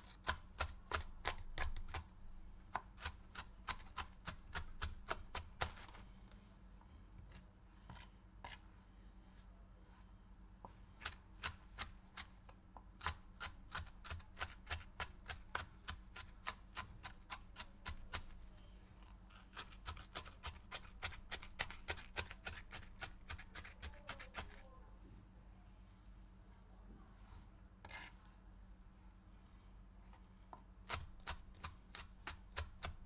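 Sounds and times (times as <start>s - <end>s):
knife chopping on cutting board: 0.0s - 2.1s, 2.8s - 6.0s, 11.0s - 12.3s, 13.0s - 18.4s, 19.5s - 24.6s, 30.9s - 33.0s.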